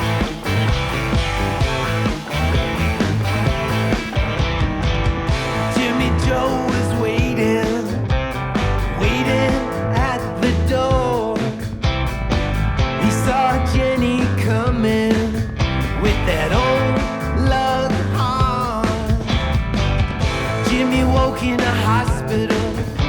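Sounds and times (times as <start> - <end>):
electric guitar lead bending: 0.0 - 10.9
live rock band playing: 0.0 - 23.0.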